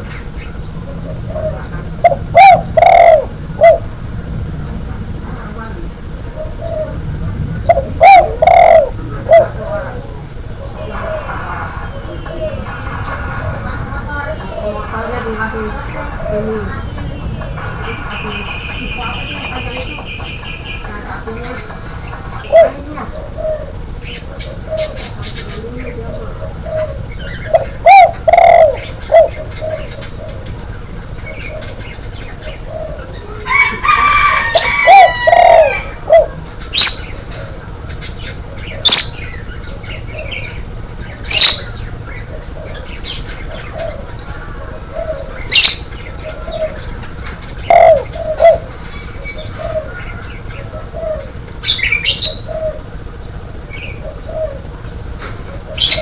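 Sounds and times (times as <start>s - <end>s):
dove cooing: 0.0s - 4.0s, 6.2s - 17.6s, 22.4s - 56.0s
multi-pitched bird call: 0.0s - 4.0s, 7.6s - 54.9s, 55.5s - 56.0s.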